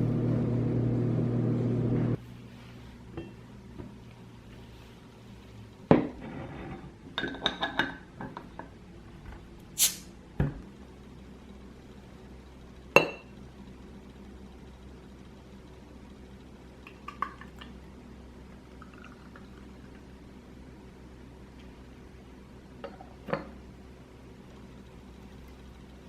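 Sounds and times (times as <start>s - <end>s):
bottle cap hiss: 9.8s - 10.2s
bottle and glass clinking: 13.0s - 13.3s.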